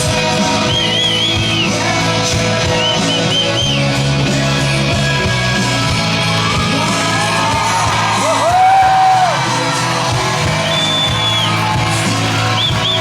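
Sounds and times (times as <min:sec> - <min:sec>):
loud rock music with singing: 0:00.0 - 0:13.0.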